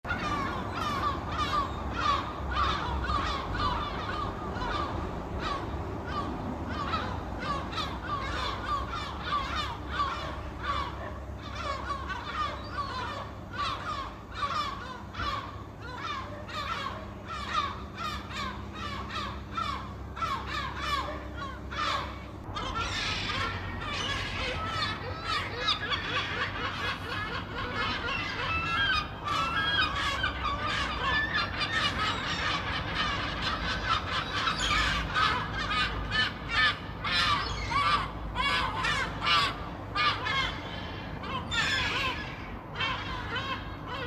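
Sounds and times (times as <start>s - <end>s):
seabirds cawing: 0.1s - 44.0s.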